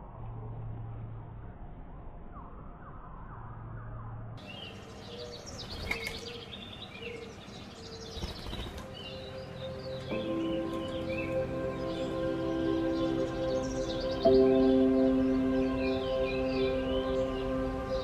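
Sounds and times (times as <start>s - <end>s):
birds chirping: 2.3s - 18.0s
soft music with held notes: 8.8s - 18.0s.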